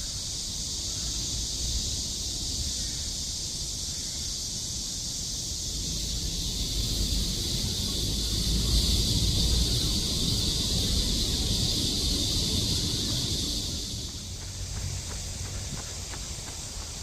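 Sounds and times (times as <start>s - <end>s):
cicadas buzzing: 0.0s - 17.0s
low rumble: 5.5s - 15.8s.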